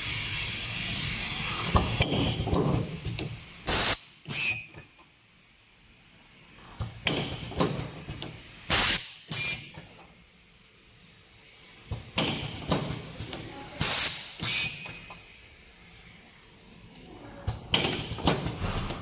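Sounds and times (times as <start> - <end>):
compressed air hissing: 3.7 - 4.6, 8.7 - 9.6, 13.8 - 15.1
machine clicking and clacking: 17.4 - 19.0.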